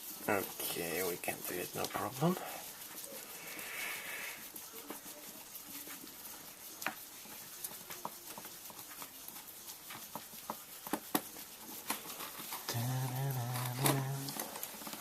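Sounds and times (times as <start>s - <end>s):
small hand tools clicking and tapping: 4.7s - 15.0s.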